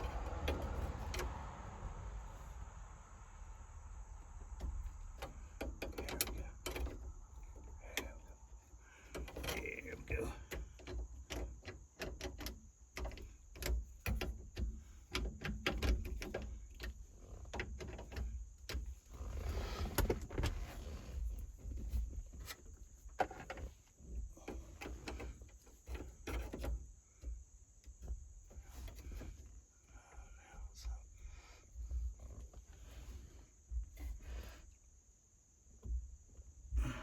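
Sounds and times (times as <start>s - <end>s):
scraping rustle: 0.0s - 2.8s, 3.4s - 29.9s, 30.8s - 35.0s
clicks and knocks of switch parts: 4.6s - 8.4s.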